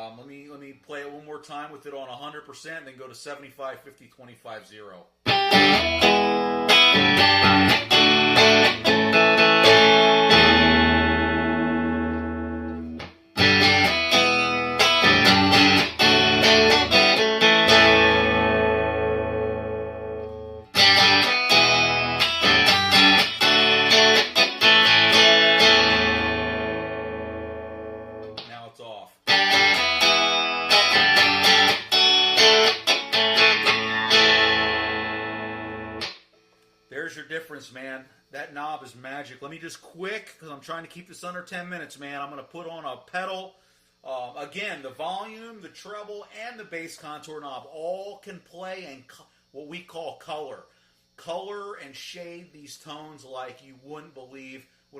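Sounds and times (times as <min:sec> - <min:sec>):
electric guitar through amp: 0:05.3 - 0:28.5, 0:29.3 - 0:36.1.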